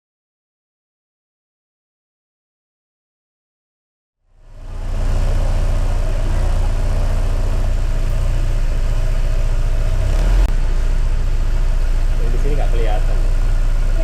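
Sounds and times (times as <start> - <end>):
scooter engine rumbling: 4.3 - 14.0.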